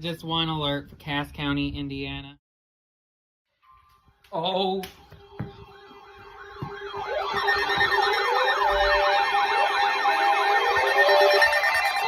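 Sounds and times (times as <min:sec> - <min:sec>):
electronic sirens yelping: 0:05.1 - 0:12.0.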